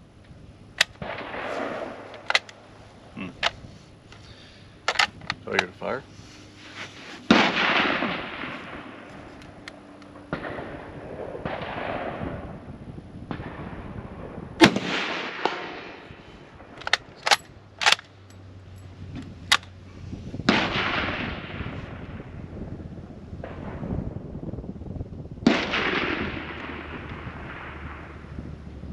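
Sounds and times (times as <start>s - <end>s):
sharp rifle bolt clicks: 0.8s - 2.6s, 4.8s - 5.8s, 16.7s - 18.4s, 19.2s - 19.8s
rifle shots with echo: 0.8s - 2.7s, 7.3s - 9.1s, 10.1s - 12.5s, 13.3s - 18.0s, 20.5s - 22.0s, 25.4s - 28.2s
faint rifle reports: 0.8s - 7.4s, 16.0s - 18.4s.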